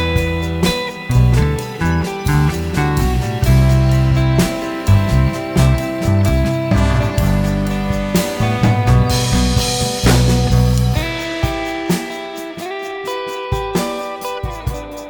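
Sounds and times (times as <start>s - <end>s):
heavy bass: 0.0s - 11.6s
guitar with drum kit music: 0.0s - 15.0s.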